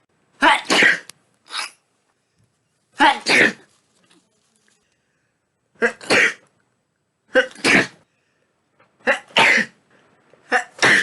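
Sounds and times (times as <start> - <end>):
person sneezing: 0.4 - 1.8, 3.0 - 3.7, 5.8 - 6.4, 7.3 - 8.0, 9.0 - 9.8, 10.4 - 11.0.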